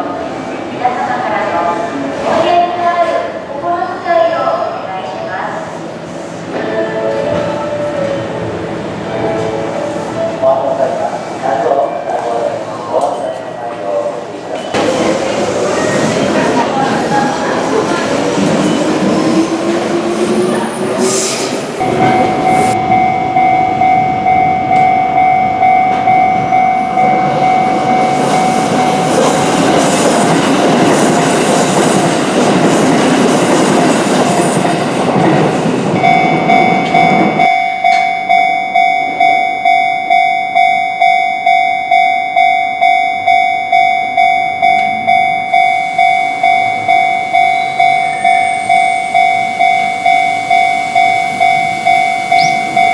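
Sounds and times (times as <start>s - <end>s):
electric train passing: 14.1s - 52.9s
level-crossing electronic bell: 21.8s - 30.4s, 36.0s - 52.9s.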